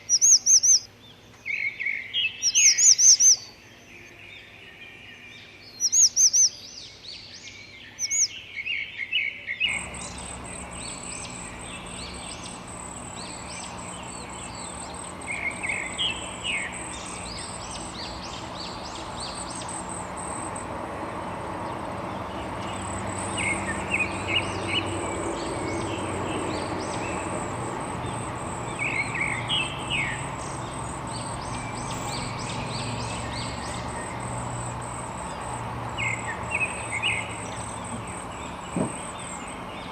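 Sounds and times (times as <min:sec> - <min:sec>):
outdoor background noise: 0:00.0 - 0:39.9
songbirds chirping: 0:00.0 - 0:39.9
high insect drone: 0:09.7 - 0:39.9.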